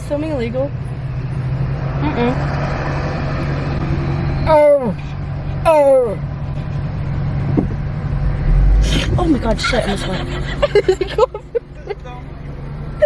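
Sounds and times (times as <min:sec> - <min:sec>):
car engine hum and road noise: 0:00.0 - 0:13.0
low rumble: 0:07.4 - 0:11.4.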